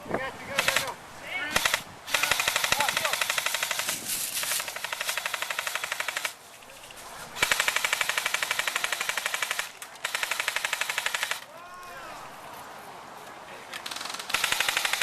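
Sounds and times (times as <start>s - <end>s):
airsoft guns firing full-auto bursts: 0.5s - 6.4s, 7.4s - 11.5s, 13.8s - 15.0s.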